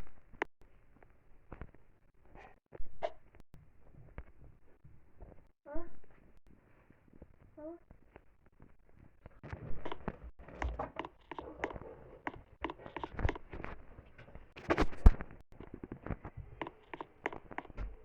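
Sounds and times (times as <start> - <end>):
irregular clicks taps and knocks: 9.8 - 18.0.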